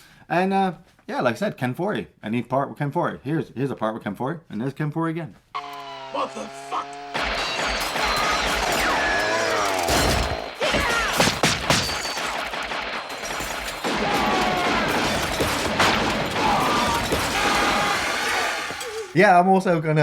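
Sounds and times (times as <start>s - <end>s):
loud sharp bangs: 5.6s - 19.2s.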